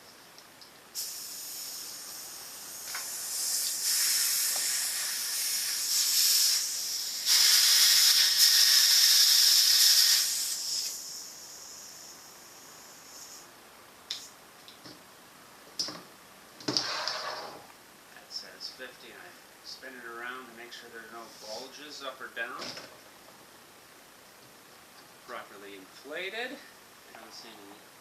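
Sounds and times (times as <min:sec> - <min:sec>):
compressed air hissing into valve: 0:00.9 - 0:13.5.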